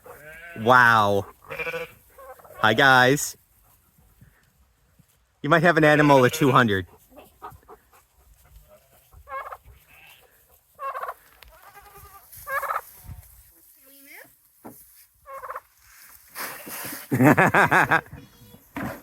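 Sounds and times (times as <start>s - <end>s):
farm animals calling: 0.0s - 4.0s, 5.7s - 13.0s, 15.2s - 15.7s.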